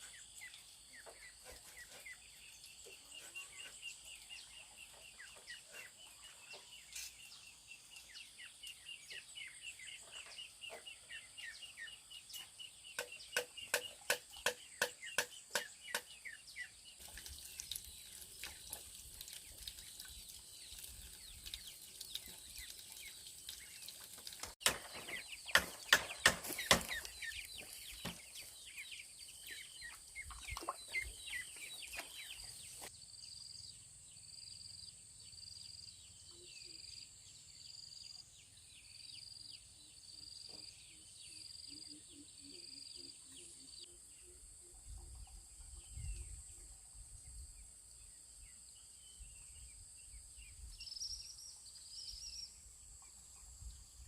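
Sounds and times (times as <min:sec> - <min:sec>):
small birds chirping: 0:00.0 - 0:54.0
sharp knocks: 0:24.6 - 0:27.1.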